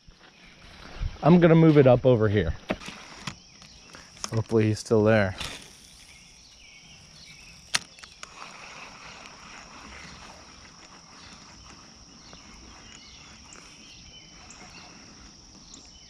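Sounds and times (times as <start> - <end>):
faint outdoor ambience: 0.0 - 16.0
high-pitched insect drone: 3.8 - 16.0.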